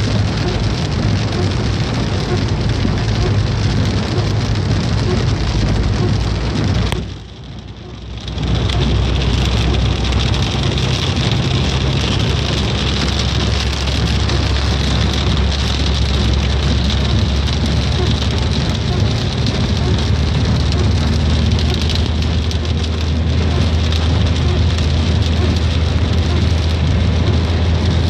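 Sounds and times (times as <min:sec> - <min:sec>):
rain falling: 0:00.0 - 0:28.0.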